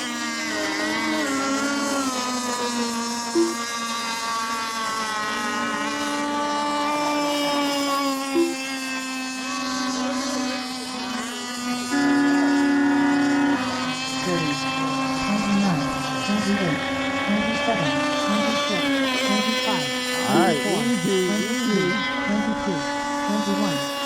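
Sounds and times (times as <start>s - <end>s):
high-pitched model boat engines: 0.0s - 24.0s.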